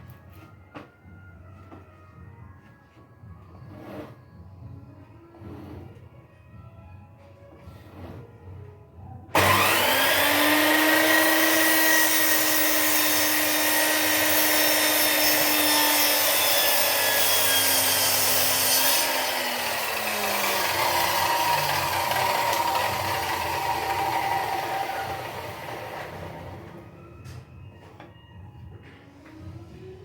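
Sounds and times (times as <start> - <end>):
power tool cutting wood: 9.4 - 26.9.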